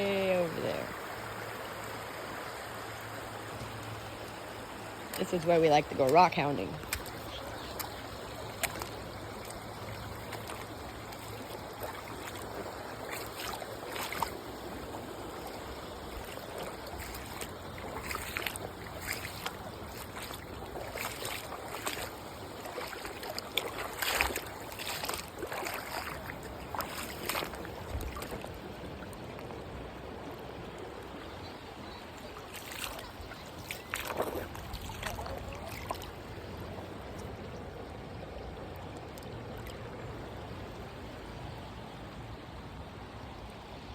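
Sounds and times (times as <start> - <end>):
river water running: 0.0 - 43.9
short knocks and splashes: 5.1 - 14.4, 15.4 - 28.6, 32.3 - 36.2.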